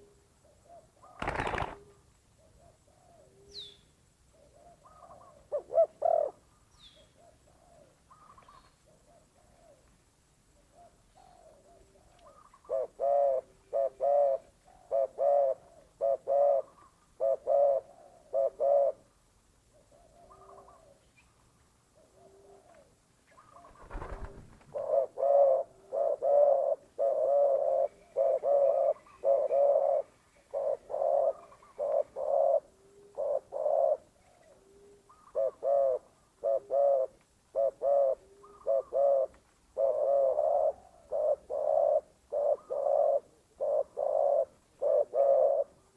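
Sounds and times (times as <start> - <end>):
dove cooing: 1.0 - 1.9, 4.5 - 6.4, 10.8 - 19.0, 22.0 - 45.9.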